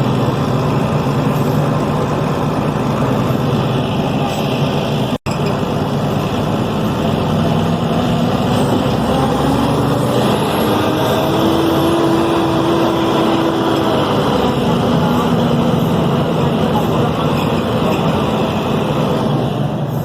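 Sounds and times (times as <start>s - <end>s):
diesel bus engine running: 0.0s - 20.0s.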